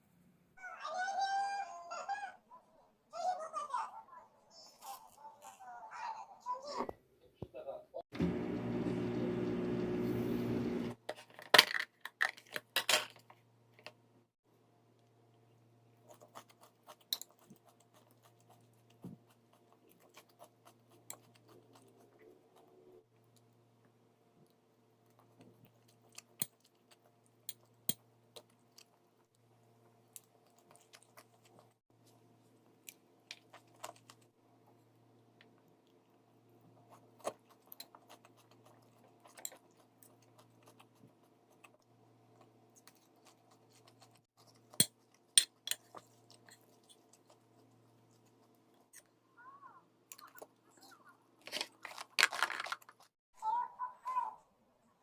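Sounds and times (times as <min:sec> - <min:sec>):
person chewing with crunches: 0:15.0 - 0:23.6, 0:25.0 - 0:49.2.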